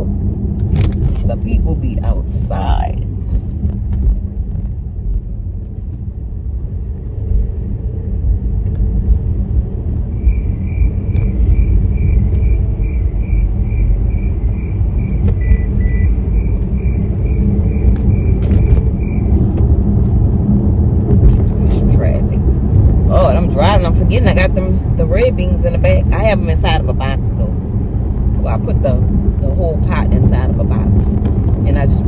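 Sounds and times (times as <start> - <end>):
engine and tyre rumble: 0.0 - 32.0
short two-note beep: 15.4 - 16.2.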